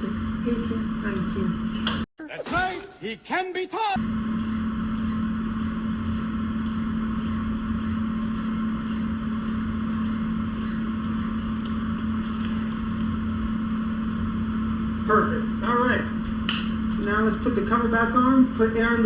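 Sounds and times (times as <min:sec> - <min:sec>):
small motor humming: 0:04.0 - 0:15.0.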